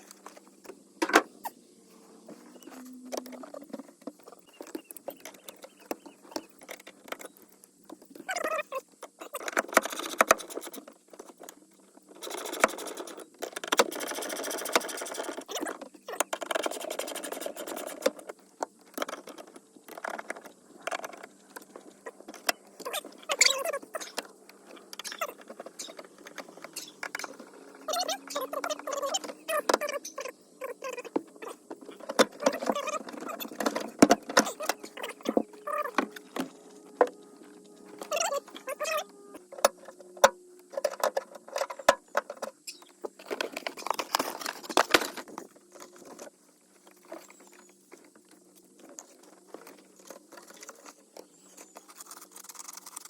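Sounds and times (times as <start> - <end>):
scraping and rustling: 0.0 - 53.0
short squeaks: 21.7 - 40.9.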